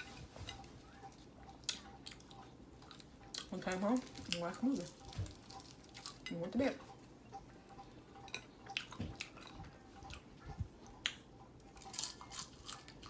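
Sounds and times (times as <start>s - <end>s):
chewing and mouth smacking: 8.6s - 13.0s.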